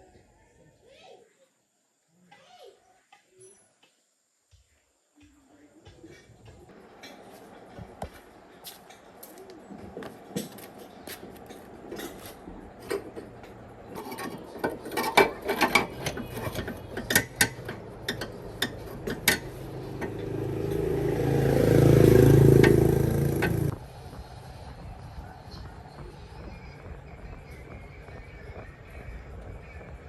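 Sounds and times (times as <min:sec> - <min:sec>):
engine running: 0:06.7 - 0:27.2
hand tools clinking on metal: 0:10.4 - 0:20.8.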